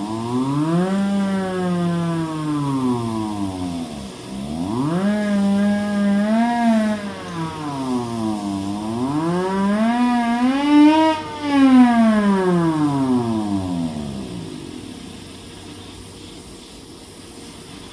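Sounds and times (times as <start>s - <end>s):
hand-crank siren wailing: 4.7s - 14.7s.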